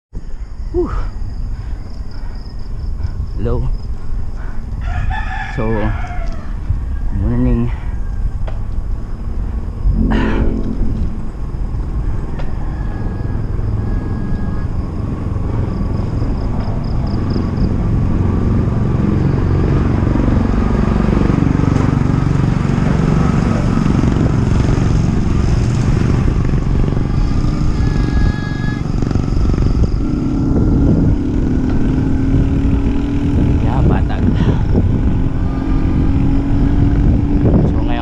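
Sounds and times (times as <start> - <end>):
wind and road noise: 0.1 - 38.0
passing motorcycle engine: 8.1 - 38.0
short high tones: 9.9 - 11.9.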